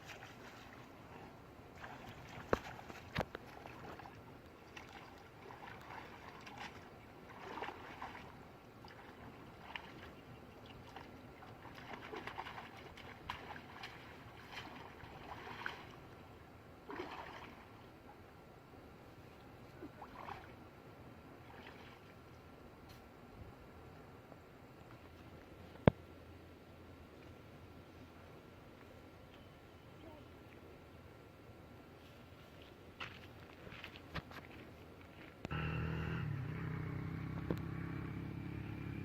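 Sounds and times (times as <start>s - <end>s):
water splashing and sloshing: 0.0s - 18.4s, 19.2s - 22.5s.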